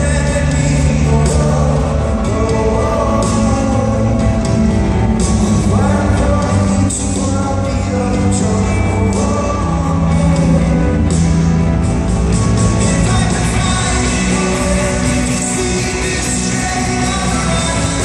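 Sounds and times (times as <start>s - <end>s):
person singing: 0.0s - 11.4s, 12.5s - 18.0s
rock band playing live: 0.0s - 18.0s.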